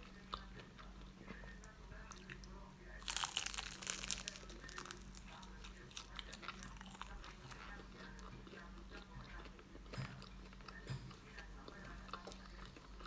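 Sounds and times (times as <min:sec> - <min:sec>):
crackly chewing: 0:00.0 - 0:13.0
crispy wrapper crunching: 0:03.0 - 0:07.6.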